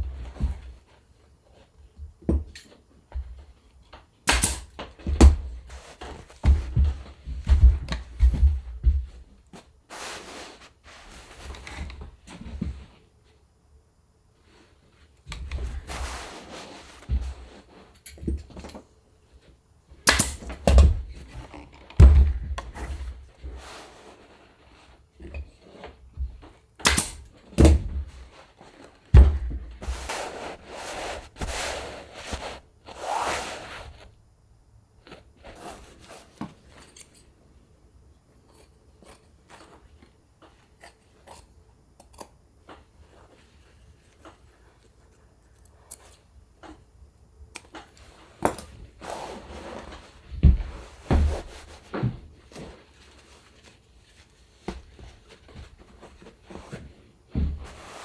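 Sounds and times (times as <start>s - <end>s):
sharp knocks and thumps: 4.3s - 9.3s, 20.1s - 21.4s, 22.0s - 23.6s, 26.2s - 28.2s, 29.1s - 30.1s
fabric rustling and scraping: 4.3s - 13.4s, 14.4s - 26.4s, 27.8s - 34.2s, 35.0s - 37.0s, 48.9s - 58.0s.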